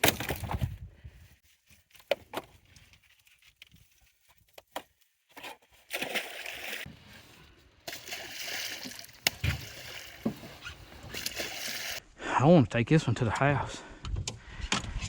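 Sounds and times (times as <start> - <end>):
water splashing and sloshing: 1.7 - 12.0.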